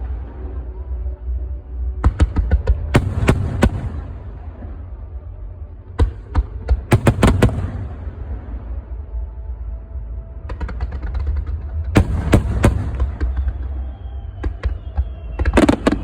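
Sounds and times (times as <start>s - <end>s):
steady low rumble: 0.0s - 14.4s
fireworks bangs: 10.5s - 16.0s.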